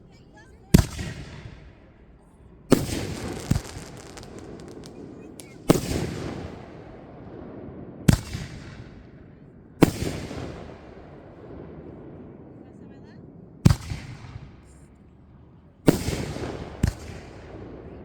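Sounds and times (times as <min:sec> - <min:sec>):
fireworks booming: 0:02.6 - 0:09.1
fireworks crackling: 0:02.7 - 0:07.0.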